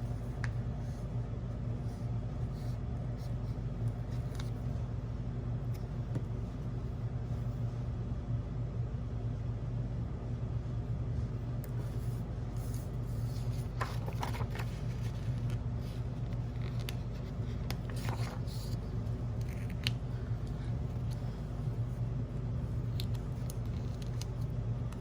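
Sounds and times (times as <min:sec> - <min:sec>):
steady low hum: 0:00.0 - 0:25.0
paper rustling: 0:12.0 - 0:21.8, 0:22.7 - 0:24.5.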